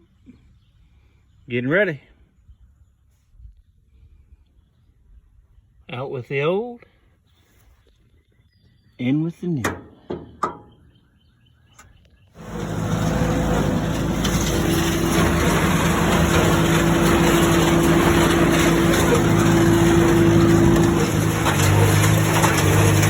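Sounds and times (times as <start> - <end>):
tractor engine running: 12.4 - 23.0.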